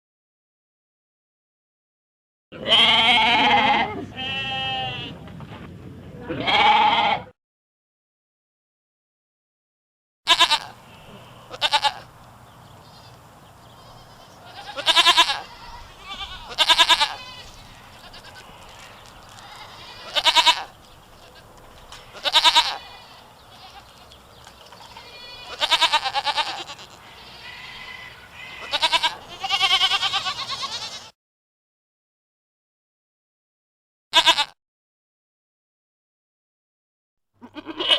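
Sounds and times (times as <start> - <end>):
goats bleating: 2.6 - 5.2, 6.3 - 7.3, 10.3 - 12.2, 12.8 - 31.1, 34.2 - 34.6, 37.4 - 37.9
low background noise: 10.3 - 31.0.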